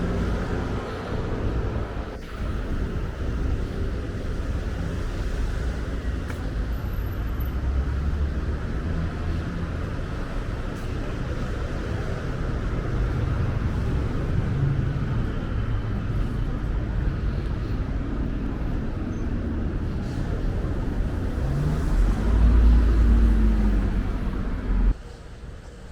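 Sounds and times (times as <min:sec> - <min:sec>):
traffic rumble: 0:00.0 - 0:25.9.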